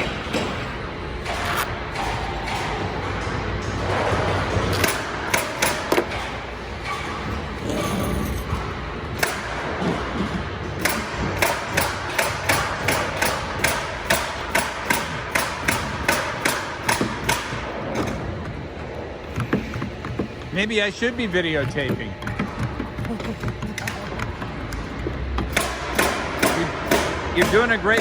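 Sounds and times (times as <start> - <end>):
low factory hum: 0.0 - 28.0
hammer striking nails: 9.2 - 18.3, 25.4 - 28.0.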